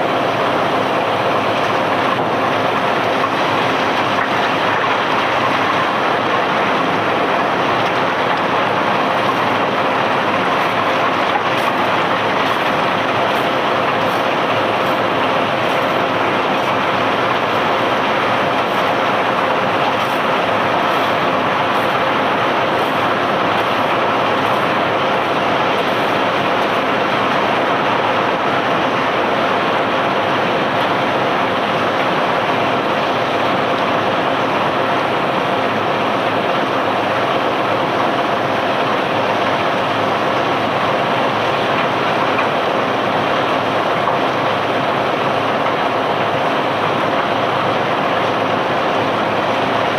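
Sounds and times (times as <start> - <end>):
machinery rushing noise: 0.0 - 37.1.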